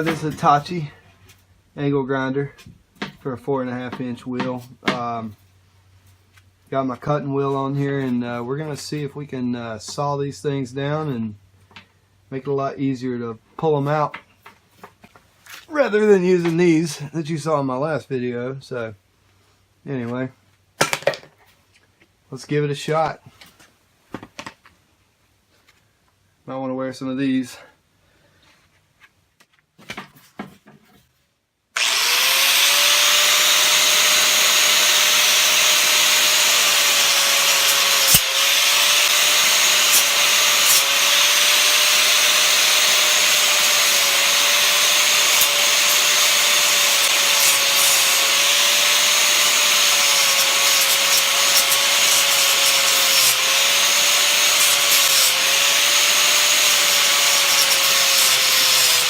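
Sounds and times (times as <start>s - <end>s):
angle grinder cutting metal: 0.0s - 0.8s, 31.8s - 59.0s.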